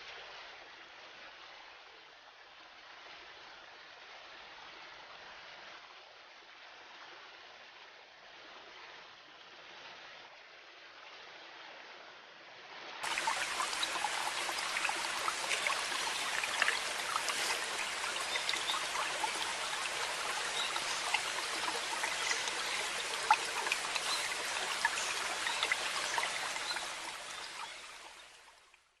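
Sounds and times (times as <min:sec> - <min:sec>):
river water rushing: 0:13.0 - 0:28.4.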